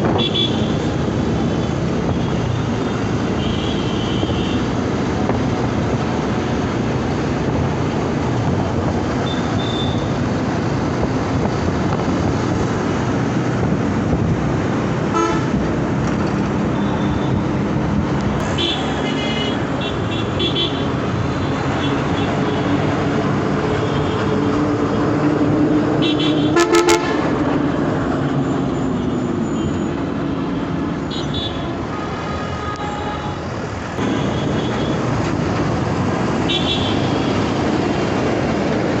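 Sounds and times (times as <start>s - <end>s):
traffic engine and road noise: 0.0s - 39.0s
vehicle horns honking: 0.1s - 0.9s, 3.4s - 4.7s, 9.2s - 10.2s, 15.1s - 15.6s, 18.4s - 20.9s, 26.0s - 27.3s, 31.0s - 35.0s, 36.4s - 37.4s
loud horn blast: 15.1s - 15.6s, 26.0s - 27.4s.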